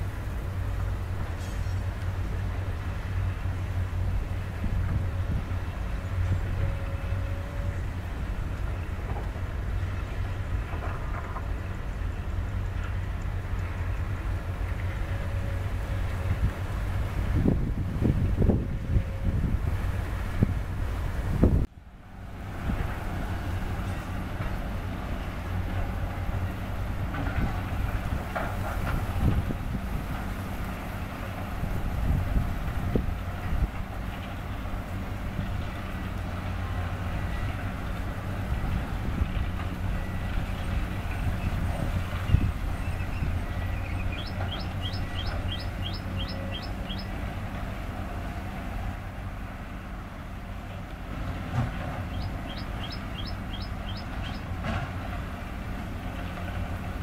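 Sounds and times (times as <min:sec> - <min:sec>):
excavator diesel engines running: 0:00.0 - 0:57.0
bird chirping: 0:42.3 - 0:47.1, 0:52.1 - 0:54.5.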